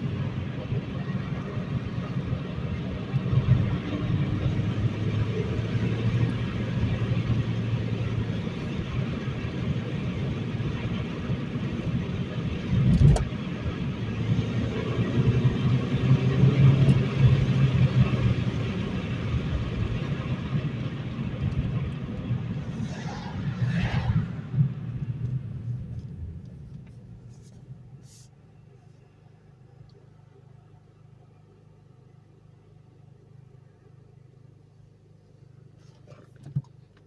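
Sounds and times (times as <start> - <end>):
car engine pulling: 0.0 - 28.2
road noise: 0.0 - 29.4.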